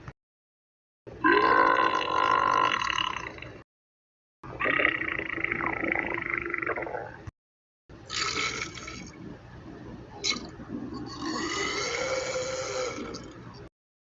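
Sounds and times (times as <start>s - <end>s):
person belching: 1.2s - 3.4s, 8.1s - 9.1s, 11.0s - 13.4s.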